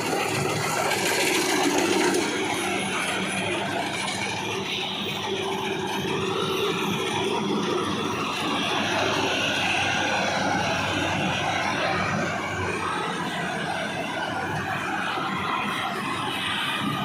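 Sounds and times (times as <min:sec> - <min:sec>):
combine harvester mechanical drone: 0:00.0 - 0:17.0.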